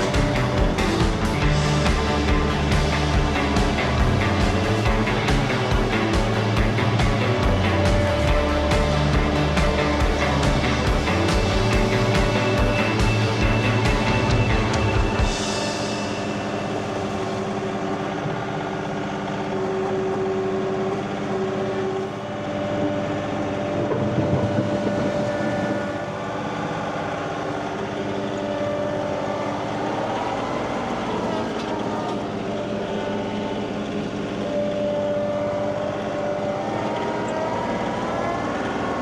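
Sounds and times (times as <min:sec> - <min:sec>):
tractor engine running: 0:00.0 - 0:39.0.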